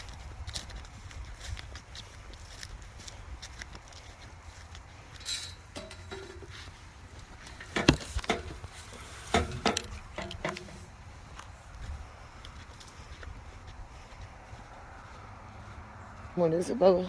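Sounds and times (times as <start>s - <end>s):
hard knocks and clatter: 7.6s - 8.6s, 9.3s - 10.8s.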